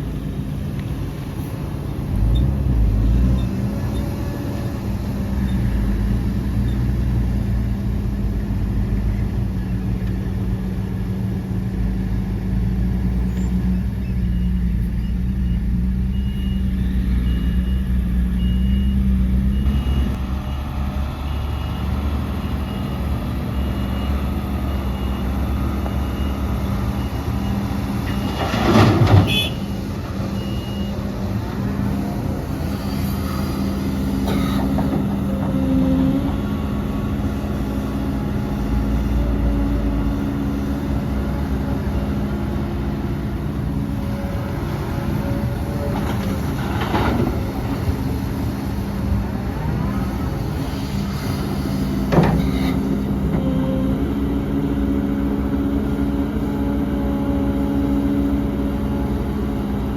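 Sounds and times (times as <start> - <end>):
heavy diesel engines running: 0.0 - 59.9
truck reversing beeper: 12.8 - 59.9.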